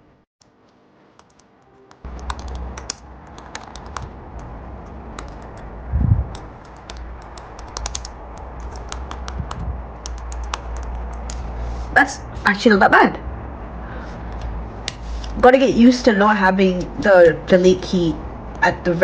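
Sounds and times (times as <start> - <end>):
keyboard key clicks: 2.1 - 5.7, 6.3 - 11.4.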